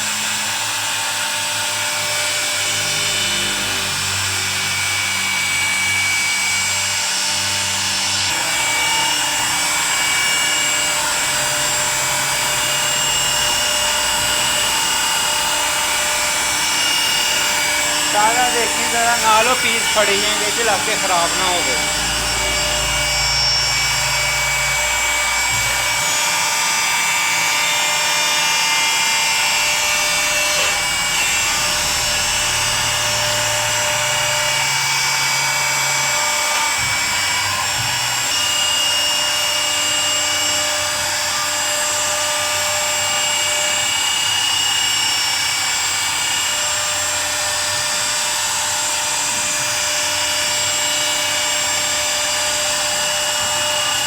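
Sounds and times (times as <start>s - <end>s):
router spindle whine: 0.0s - 54.0s
router bit rasping in wood: 1.4s - 38.6s.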